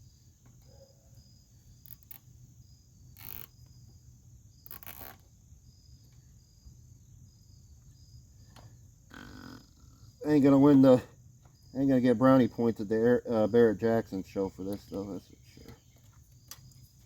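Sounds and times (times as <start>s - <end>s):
crickets chirping: 0.0s - 17.0s
zip ties rasping and clicking: 3.1s - 3.6s, 4.6s - 5.2s.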